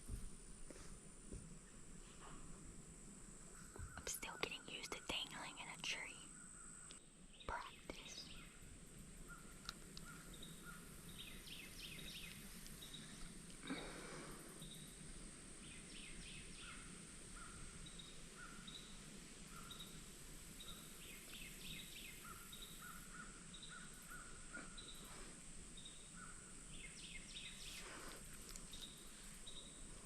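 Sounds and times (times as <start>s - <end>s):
steady high hiss: 0.0s - 30.0s
bird calls and chirps: 3.6s - 13.3s, 15.6s - 20.0s, 20.6s - 25.2s, 25.8s - 27.9s.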